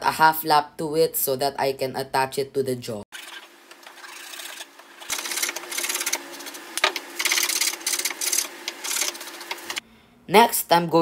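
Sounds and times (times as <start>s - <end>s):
hand saw cutting wood: 3.2s - 9.8s.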